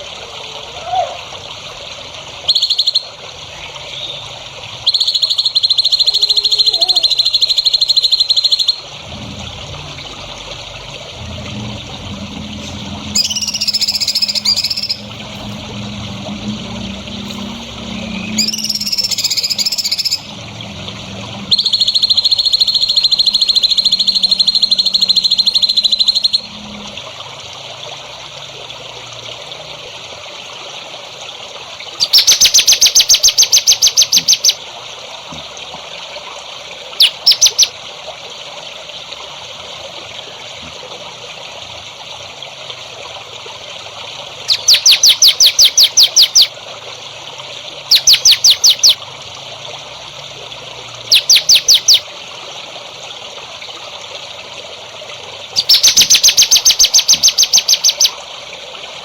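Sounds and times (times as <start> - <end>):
songbird calls and trills: 2.5 - 4.2, 4.8 - 8.9, 12.6 - 15.2, 18.2 - 20.3, 21.5 - 26.6, 32.0 - 34.6, 37.0 - 37.7, 44.5 - 46.5, 47.9 - 49.0, 51.1 - 52.0, 55.6 - 58.2.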